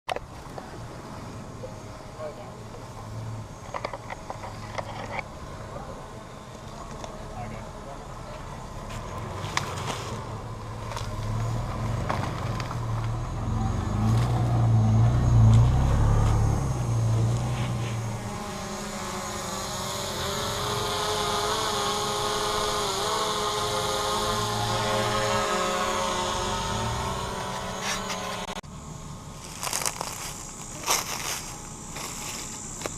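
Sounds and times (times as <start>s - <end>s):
high wavering whine: 0.1s - 32.9s
vehicle engine driving through sand: 8.2s - 32.9s.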